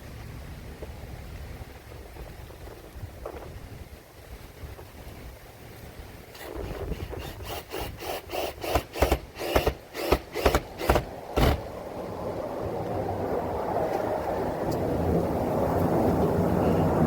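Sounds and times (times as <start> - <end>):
hand tool strokes on wood: 6.4 - 11.6.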